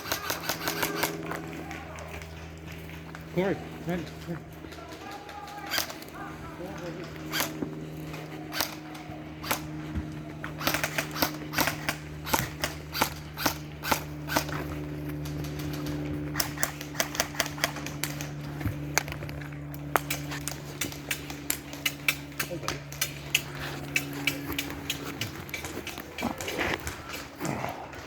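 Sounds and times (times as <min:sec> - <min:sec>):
airsoft guns firing: 0:00.0 - 0:02.5, 0:04.0 - 0:19.1
steady low hum: 0:00.0 - 0:28.0.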